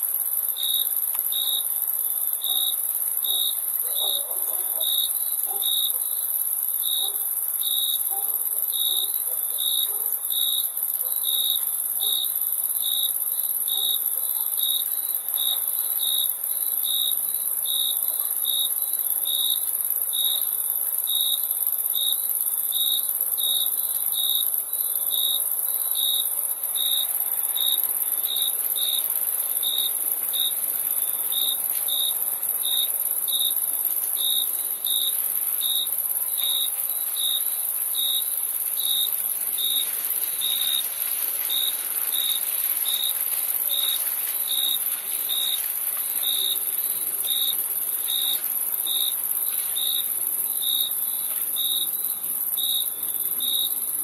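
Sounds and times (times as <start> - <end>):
cricket chirping: 0.0 - 54.0
high-pitched insect trill: 21.1 - 54.0.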